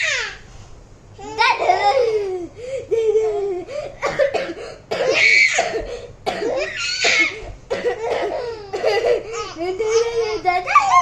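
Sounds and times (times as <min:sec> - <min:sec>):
coughing: 0:04.0 - 0:10.1.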